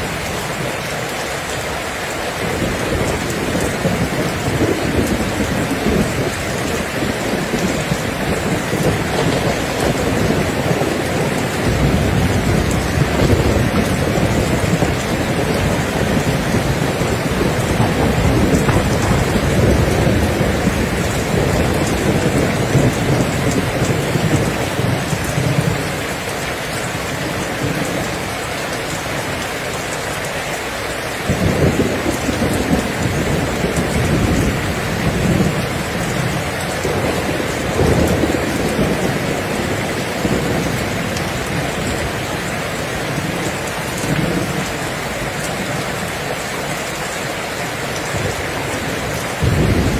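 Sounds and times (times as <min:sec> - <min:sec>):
heavy rain falling: 0:00.0 - 0:49.9
low rolling rumbles: 0:02.6 - 0:26.0.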